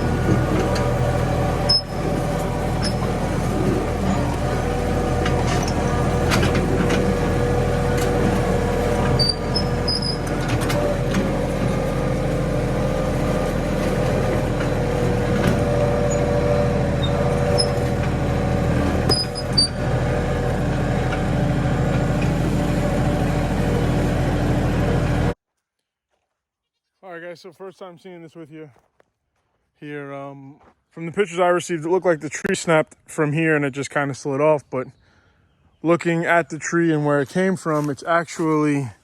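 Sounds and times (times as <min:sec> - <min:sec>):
high squeaks: 0:00.0 - 0:12.1, 0:13.1 - 0:20.6
tractor diesel engine running: 0:00.0 - 0:25.4.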